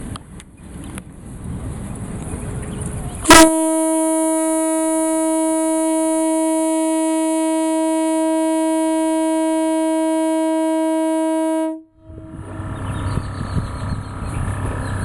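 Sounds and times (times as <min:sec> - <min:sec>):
rough rumbling noise: 0:00.0 - 0:15.0
train horn blowing: 0:03.2 - 0:12.5.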